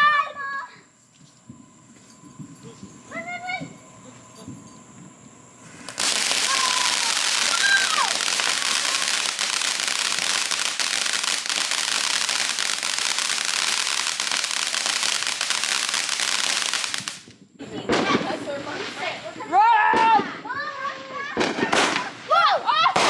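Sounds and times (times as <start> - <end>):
firework fountain crackling: 1.5 - 23.0
falling whistle tones: 6.1 - 9.4.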